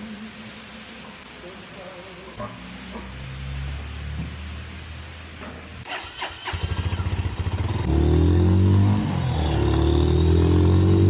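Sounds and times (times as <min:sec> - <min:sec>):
motorcycle starter cranking: 0:05.8 - 0:07.8
motorcycle engine revving: 0:05.8 - 0:11.0.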